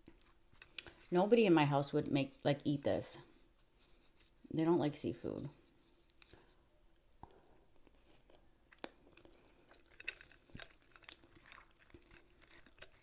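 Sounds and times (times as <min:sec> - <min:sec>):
faint chewing: 0:00.0 - 0:01.1, 0:05.6 - 0:13.0
wet mouth sounds: 0:08.2 - 0:13.0.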